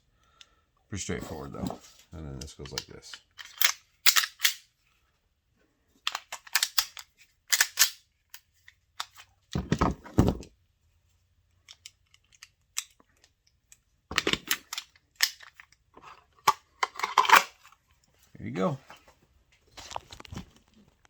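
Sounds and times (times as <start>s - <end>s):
sharp metallic clicks and snaps: 2.4s - 4.6s, 6.0s - 9.2s, 11.6s - 15.8s.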